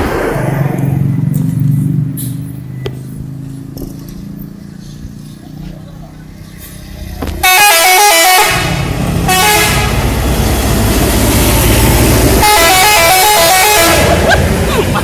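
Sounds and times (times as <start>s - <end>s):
bus engine running: 0.0s - 15.0s
bus musical horn tune: 7.4s - 10.1s, 12.4s - 14.3s.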